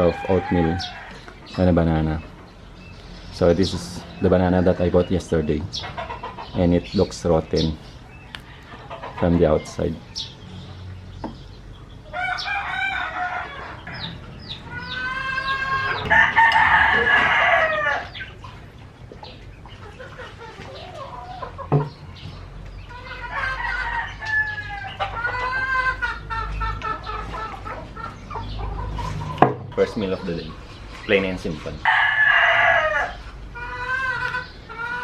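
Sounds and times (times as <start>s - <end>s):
rooster crowing: 0.0s - 1.2s, 12.1s - 18.2s, 23.0s - 26.0s, 31.8s - 34.3s.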